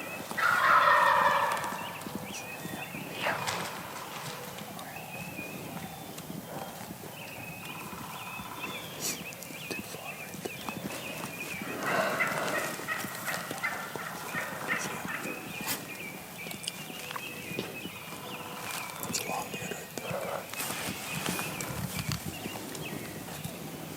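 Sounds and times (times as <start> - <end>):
turkey gobbling: 0.3 - 2.4, 11.6 - 15.9.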